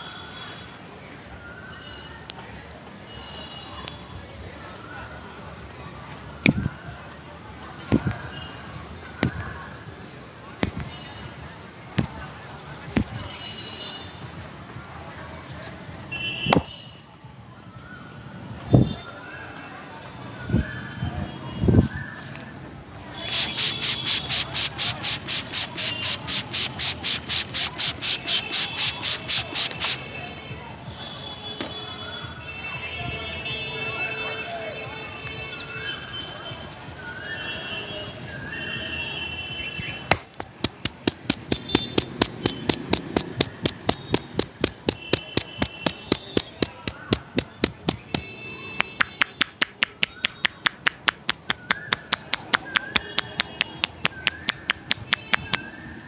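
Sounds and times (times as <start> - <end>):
hands rubbing hair: 23.3 - 30.0, 35.4 - 55.6.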